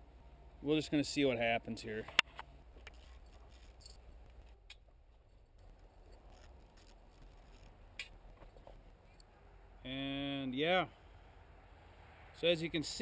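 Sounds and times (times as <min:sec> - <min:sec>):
faint handling noises: 0:02.0 - 0:09.3.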